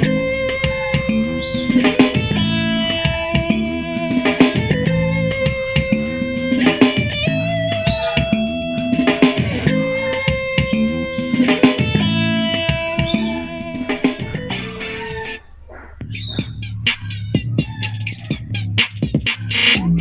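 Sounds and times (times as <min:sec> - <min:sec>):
guitar music through small speaker: 0:00.0 - 0:15.4.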